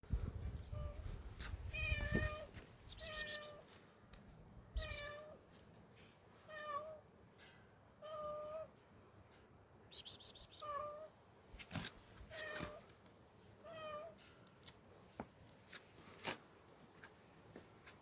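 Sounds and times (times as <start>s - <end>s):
cat meowing: 1.7s - 3.6s, 4.8s - 5.4s, 10.6s - 11.1s, 12.3s - 12.8s, 13.6s - 14.2s.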